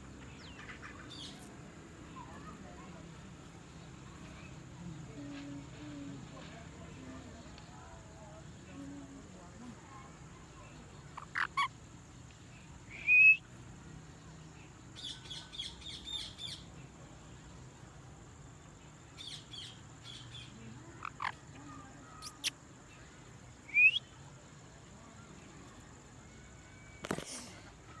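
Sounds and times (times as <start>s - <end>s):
parrot chirping: 11.2s - 11.7s, 21.0s - 21.4s, 22.2s - 22.6s.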